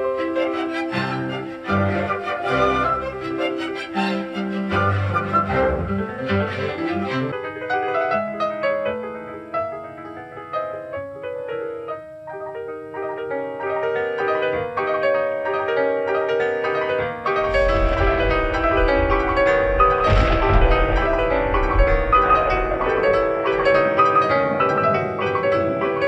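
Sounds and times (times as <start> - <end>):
piano running passages: 0.0 - 26.0
symphony orchestra playing: 0.2 - 7.4.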